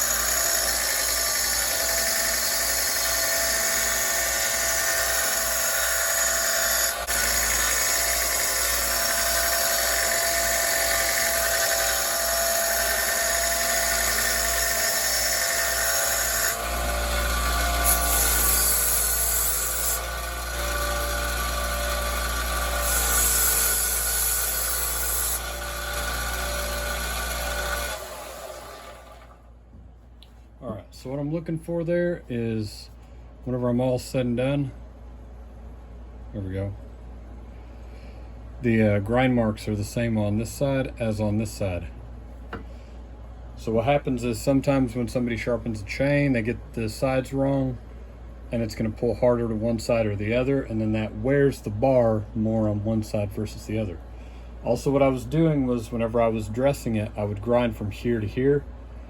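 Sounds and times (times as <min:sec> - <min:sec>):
electric sander grinding metal: 0:00.0 - 0:28.0.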